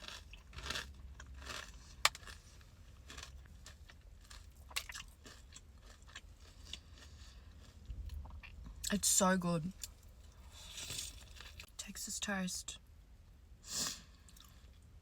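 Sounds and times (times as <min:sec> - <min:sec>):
person chewing crunchy food: 0:00.0 - 0:08.9, 0:09.8 - 0:11.7, 0:13.9 - 0:14.9.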